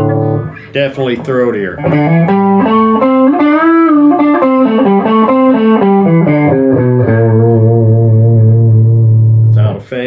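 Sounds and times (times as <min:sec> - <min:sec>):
electric guitar melody: 0:00.0 - 0:09.8.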